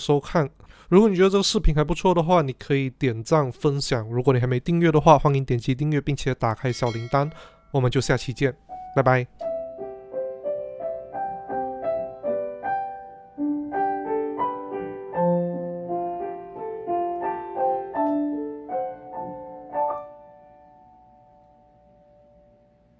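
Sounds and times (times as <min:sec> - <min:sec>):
piano melody: 0:06.5 - 0:22.9.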